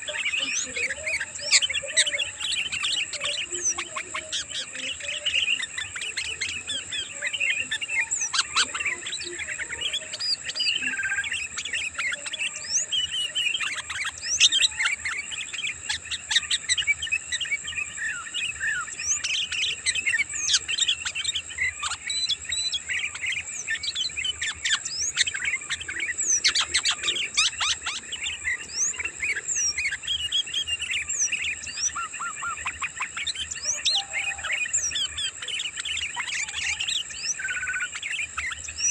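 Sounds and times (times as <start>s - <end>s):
bulbuls chattering: 0.0s - 38.9s.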